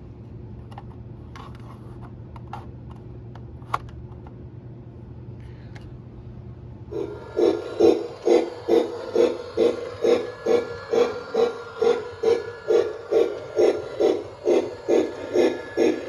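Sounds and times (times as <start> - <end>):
low electrical hum: 0.0 - 16.0
loud pulsing sound: 6.9 - 16.0.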